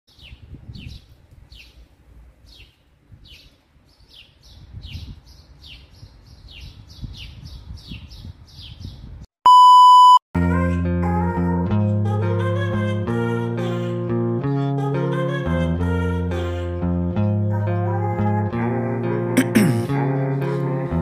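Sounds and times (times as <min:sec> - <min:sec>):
electronic beep: 0:09.4 - 0:10.2
short high falling chirps: 0:09.5 - 0:10.2.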